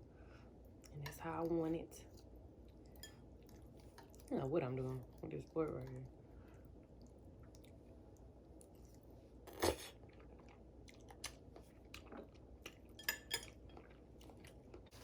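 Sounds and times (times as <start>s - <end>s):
person chewing noodles: 6.3s - 15.0s.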